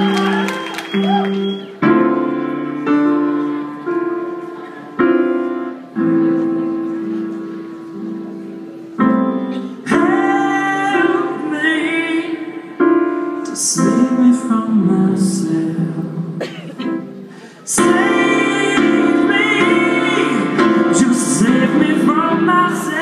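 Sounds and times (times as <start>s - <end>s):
slow piano chords: 0.0s - 23.0s.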